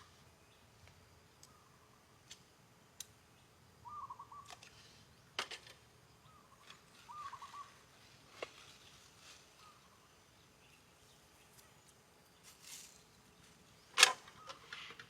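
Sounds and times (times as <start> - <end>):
faint background ambience: 0.0 - 15.0
distant bird calling: 3.3 - 8.7, 13.4 - 15.0.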